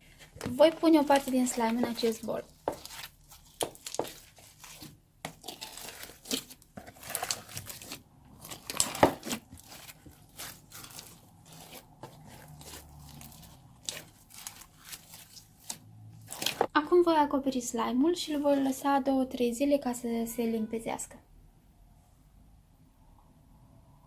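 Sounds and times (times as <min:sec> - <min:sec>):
slime crackling and tearing: 0:00.6 - 0:16.7.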